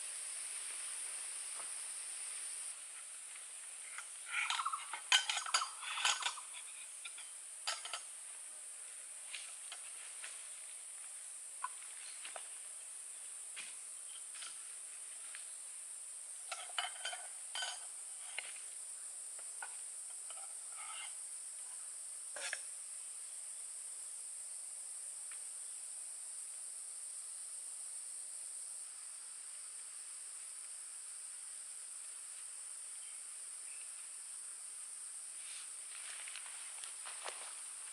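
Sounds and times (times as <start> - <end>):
insect chorus: 0.0 - 37.9
light clinks and knocks: 3.9 - 8.1, 16.5 - 18.6, 19.4 - 21.2.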